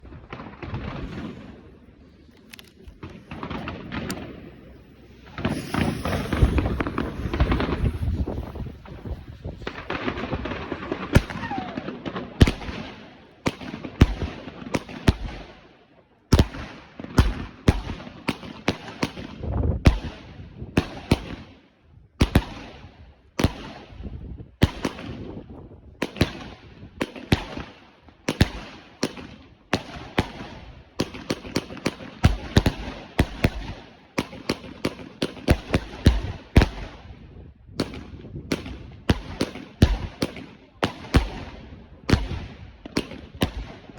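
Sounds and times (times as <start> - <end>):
fireworks crackling and hiss: 0.0 - 15.0
fireworks bangs: 0.0 - 15.3.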